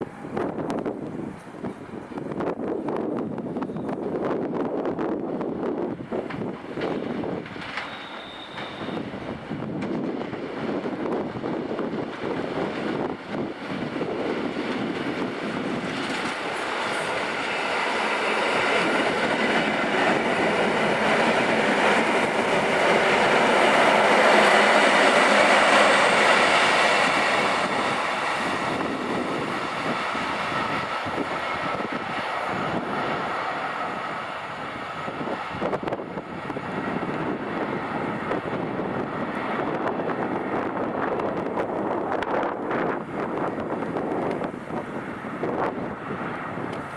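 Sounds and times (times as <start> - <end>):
high whine of train: 0.0 - 46.9
train wheels rumbling on rails: 0.0 - 46.9.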